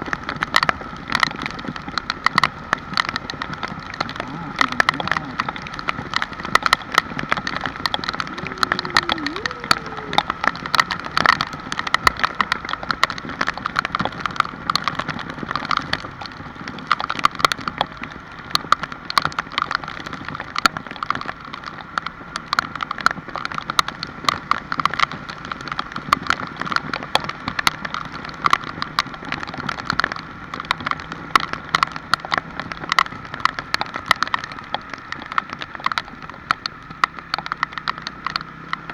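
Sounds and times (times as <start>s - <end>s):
raindrops tapping on hard surface: 0.0s - 38.9s
steady high-pitched tone: 8.3s - 10.2s.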